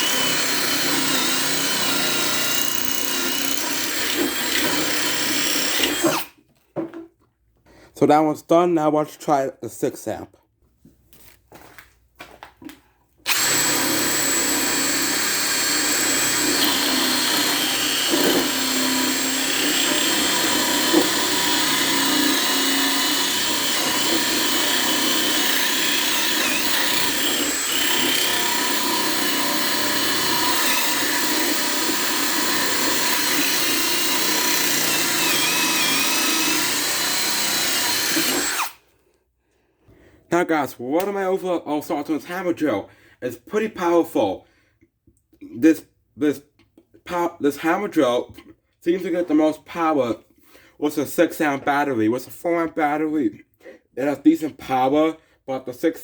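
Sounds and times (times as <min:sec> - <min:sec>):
drill motor whining into wood: 0:00.0 - 0:06.4, 0:13.3 - 0:38.8.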